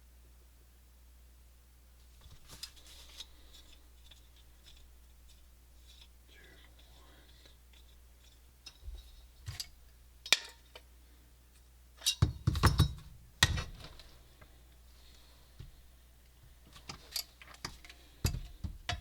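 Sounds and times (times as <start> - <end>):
metal parts clicking and clinking: 2.2 - 10.8, 12.0 - 14.1, 16.7 - 19.0.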